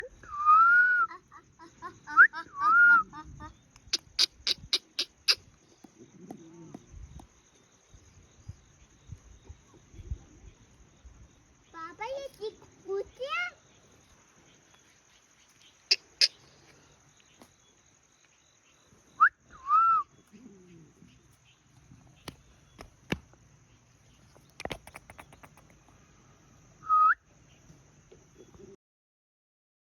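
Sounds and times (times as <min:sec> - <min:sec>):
sharp clicks: 0:24.4 - 0:25.8.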